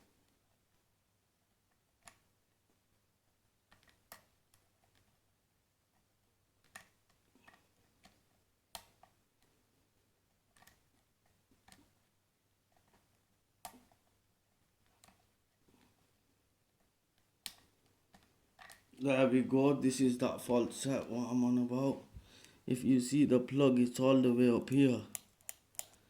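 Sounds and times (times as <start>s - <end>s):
metallic clicks of lock picking: 25.1s - 26.0s.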